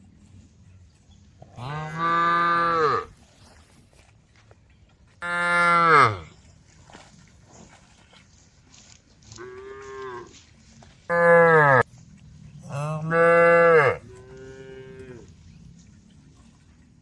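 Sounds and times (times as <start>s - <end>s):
cows mooing: 1.5s - 3.2s, 5.2s - 6.3s, 11.1s - 11.8s, 12.6s - 15.3s.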